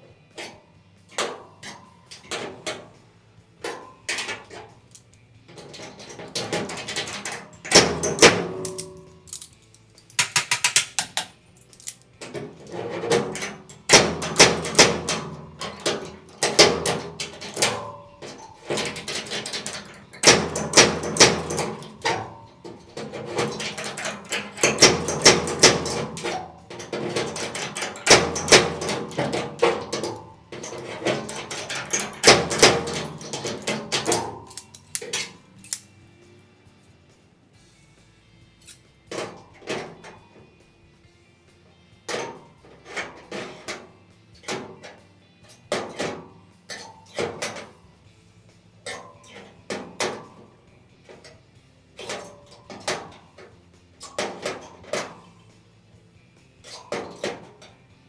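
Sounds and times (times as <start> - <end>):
hammer striking sheet metal: 10.2 - 11.3.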